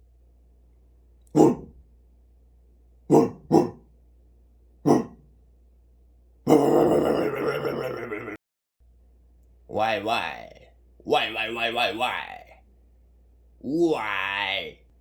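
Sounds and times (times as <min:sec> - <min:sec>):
person clearing throat: 0:03.1 - 0:03.8, 0:06.5 - 0:08.4.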